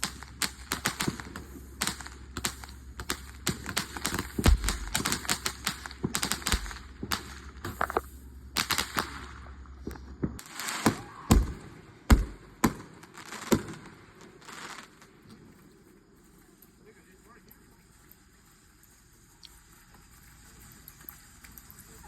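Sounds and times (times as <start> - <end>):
firework bangs: 0.0 - 15.5
firecracker pops crackling: 0.0 - 15.6.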